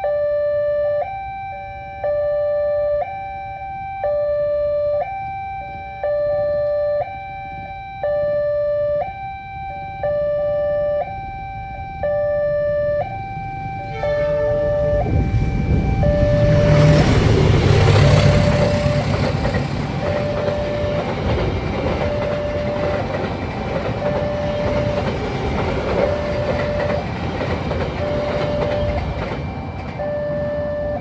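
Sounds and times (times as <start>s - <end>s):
two-tone crossing warning alarm: 0.0s - 31.0s
train wheels clattering on rails: 15.2s - 31.0s.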